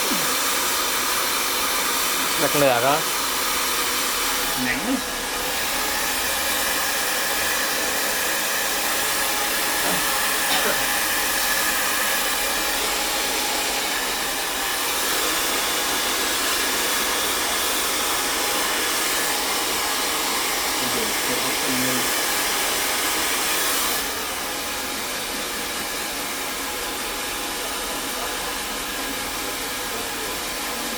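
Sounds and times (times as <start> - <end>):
hair dryer blowing: 0.0 - 30.9.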